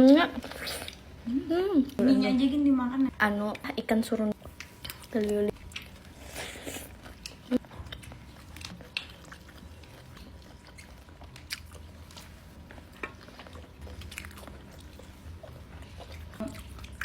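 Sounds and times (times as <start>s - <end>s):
person chewing: 4.4s - 17.0s.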